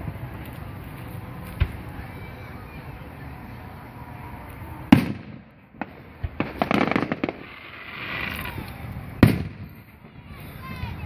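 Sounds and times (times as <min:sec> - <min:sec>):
fireworks crackling pops: 0:00.0 - 0:02.5, 0:04.3 - 0:11.0
fireworks booms: 0:01.6 - 0:02.1, 0:04.9 - 0:11.0.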